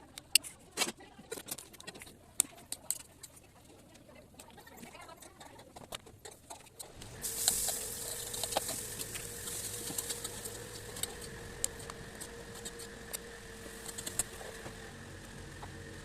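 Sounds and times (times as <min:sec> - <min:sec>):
crackles and pops: 0:05.7 - 0:15.8
faint steady hum: 0:06.8 - 0:16.0
bread frying in hot fat: 0:07.0 - 0:16.0.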